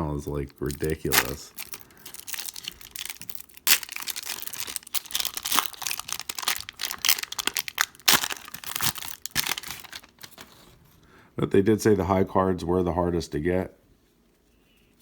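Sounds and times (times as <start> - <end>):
plastic wrapper crinkling: 0.0 - 10.8.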